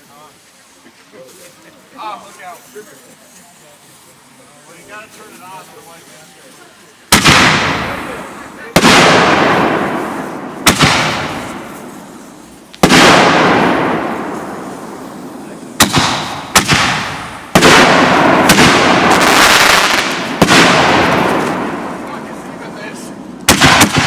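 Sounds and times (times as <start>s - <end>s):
fireworks bangs: 7.0s - 24.0s.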